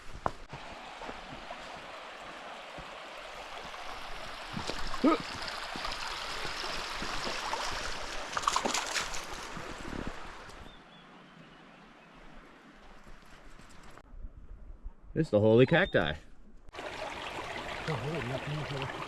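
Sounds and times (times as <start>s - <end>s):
creek water gurgling over rocks: 0.5s - 10.4s, 16.7s - 19.0s.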